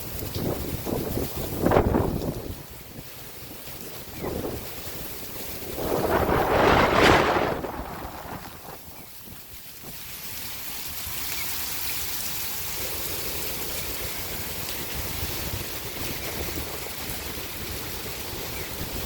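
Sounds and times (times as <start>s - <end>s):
wind buffeting microphone: 0.0s - 10.2s, 12.6s - 19.0s
strong wind rushing: 4.2s - 9.4s.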